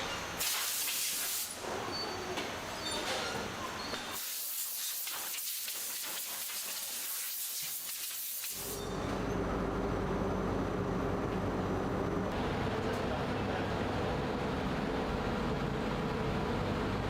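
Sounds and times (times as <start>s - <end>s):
factory machinery hum: 0.0s - 4.2s, 8.5s - 17.0s
high pressurized air hiss: 0.4s - 1.6s, 4.1s - 8.8s.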